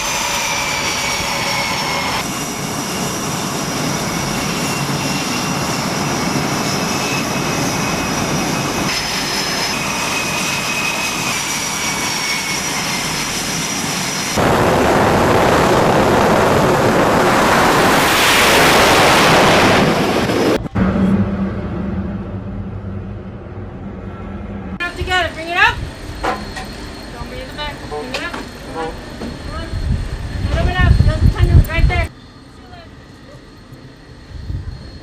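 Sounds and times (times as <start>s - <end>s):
jet engine roar: 0.0s - 35.0s
jet engines running: 0.0s - 35.0s
low steady hum: 20.5s - 25.4s.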